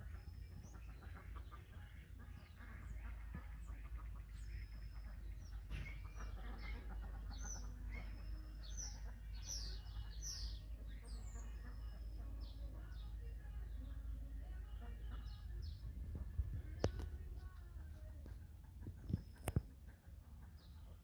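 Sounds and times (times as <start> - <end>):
songbirds chirping: 0.0 - 21.0
low rumble: 12.3 - 19.1.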